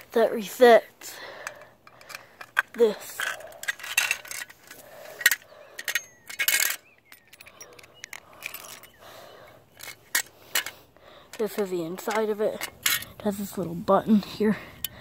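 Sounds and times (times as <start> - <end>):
metal clicks and clinks: 1.4 - 9.0, 9.7 - 13.2.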